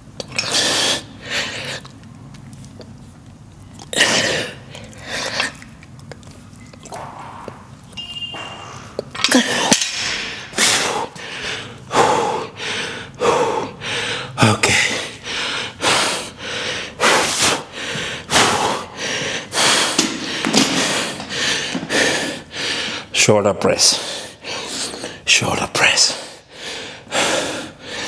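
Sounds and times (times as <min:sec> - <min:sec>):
person breathing hard: 0:08.5 - 0:23.1, 0:26.1 - 0:28.0.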